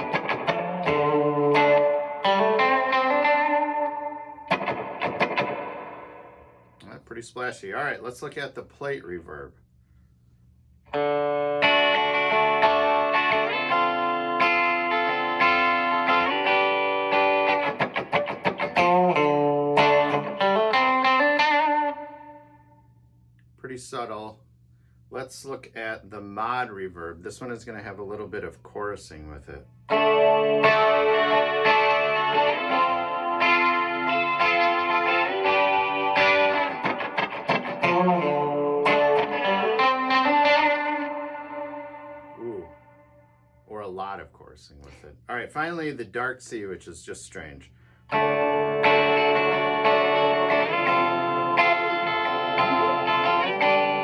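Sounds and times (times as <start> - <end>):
clean electric guitar with reverb: 0.0 - 6.8, 10.9 - 22.8, 29.9 - 43.4, 48.1 - 54.0.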